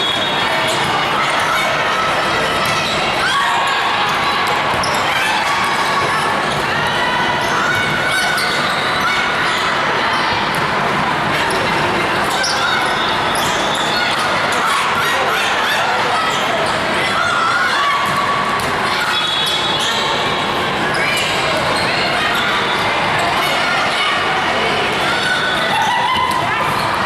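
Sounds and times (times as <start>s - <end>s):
voices echoing in a hall: 0.0s - 27.0s
volleyballs bouncing and being hit: 18.0s - 19.0s.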